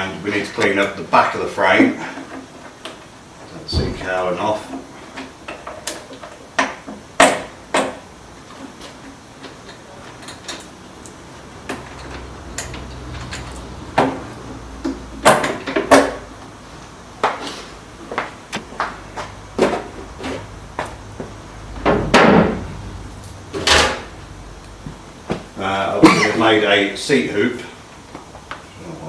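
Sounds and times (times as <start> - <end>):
bodywork and tools clattering: 10.3 - 11.2, 12.6 - 13.8, 23.0 - 24.1.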